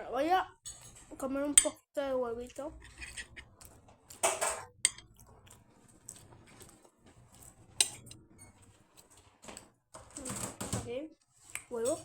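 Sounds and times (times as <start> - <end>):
cutlery clinking on a plate: 7.8 - 8.2.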